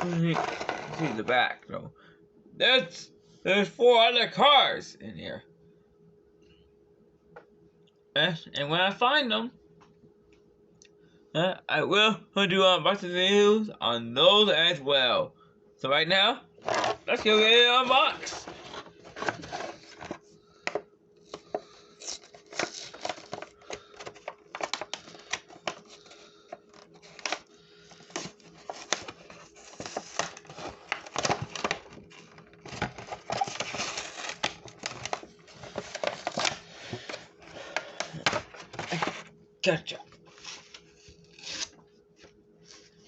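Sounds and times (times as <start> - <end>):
packaging crinkling and tearing: 0.0 - 1.3, 16.6 - 17.4, 21.3 - 39.3, 40.3 - 41.8
faint steady hum: 0.0 - 43.0.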